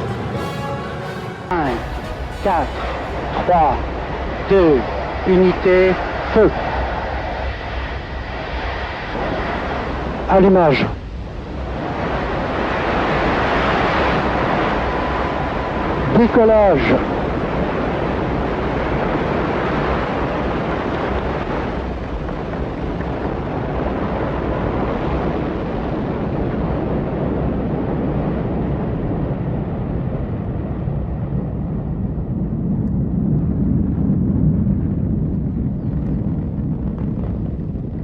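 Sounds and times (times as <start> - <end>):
rocket engine roaring: 0.0 - 38.0.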